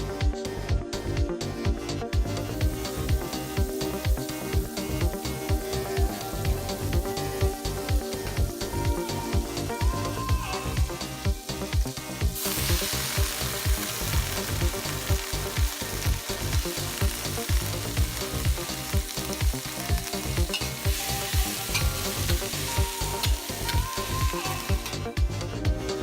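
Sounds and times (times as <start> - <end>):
background music with a beat: 0.0 - 26.0
noodles sizzling in a pan: 2.8 - 25.1.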